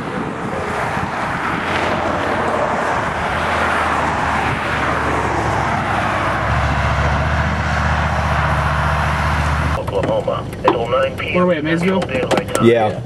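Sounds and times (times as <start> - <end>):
vehicle engine hum: 0.0 - 13.0.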